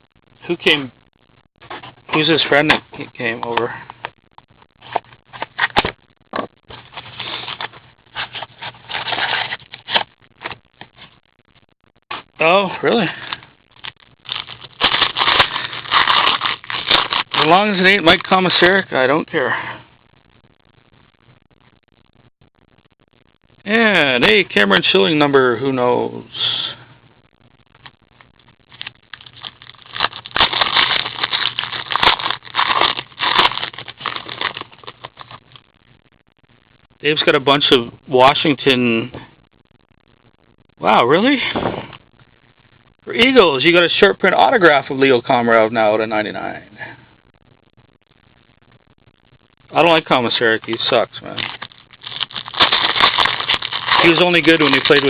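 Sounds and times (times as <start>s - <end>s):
cards and wrappers rustling: 4.8s - 11.2s, 13.2s - 18.7s, 28.7s - 35.6s, 49.8s - 55.0s.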